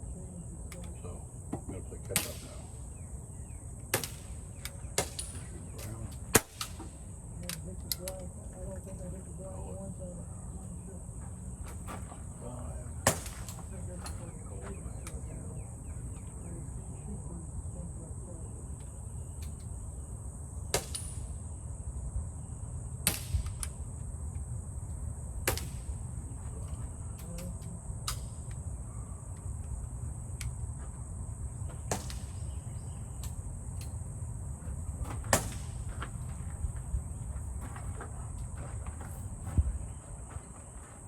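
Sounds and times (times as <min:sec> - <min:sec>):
crickets chirping: 0:00.0 - 0:41.0
air guns firing sharp pops: 0:02.1 - 0:02.6, 0:03.9 - 0:05.5, 0:06.3 - 0:06.9, 0:13.0 - 0:13.6, 0:20.7 - 0:21.3, 0:23.0 - 0:23.8, 0:25.4 - 0:26.0, 0:31.8 - 0:32.5, 0:35.2 - 0:35.8.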